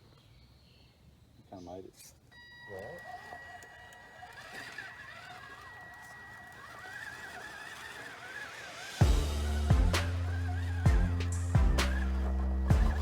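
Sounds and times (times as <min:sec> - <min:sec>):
small electric motor whining: 0:02.3 - 0:13.0
music with heavy beat: 0:09.0 - 0:13.0.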